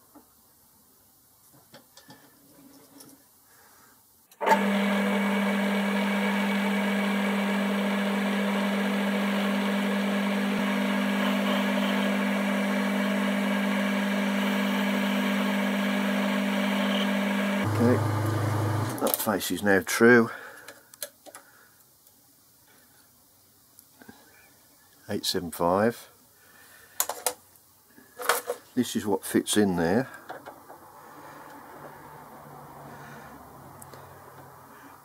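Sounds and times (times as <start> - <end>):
metal lathe humming: 4.4 - 19.0.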